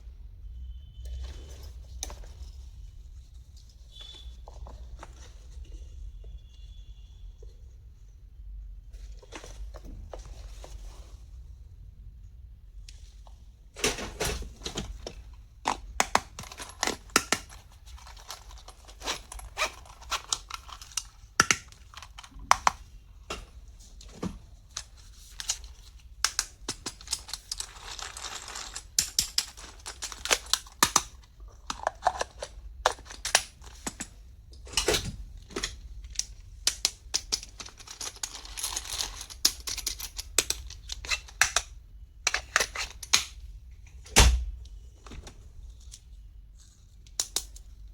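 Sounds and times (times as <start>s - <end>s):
plastic items clicking: 14.6s - 22.9s, 24.7s - 43.4s.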